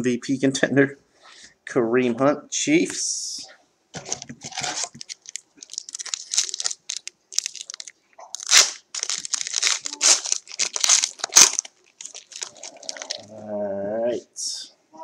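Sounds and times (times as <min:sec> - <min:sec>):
cards being flipped: 0:04.0 - 0:13.2
foil wrapper crinkling: 0:04.0 - 0:13.2.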